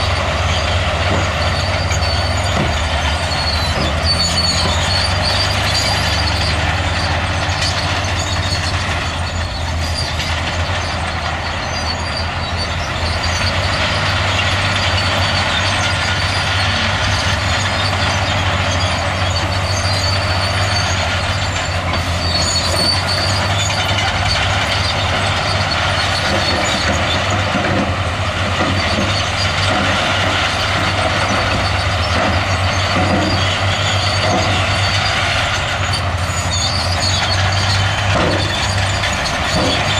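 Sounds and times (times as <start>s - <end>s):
high metallic squeal: 0.0s - 27.8s, 28.4s - 39.9s
heavy machinery diesel engines: 0.0s - 39.9s.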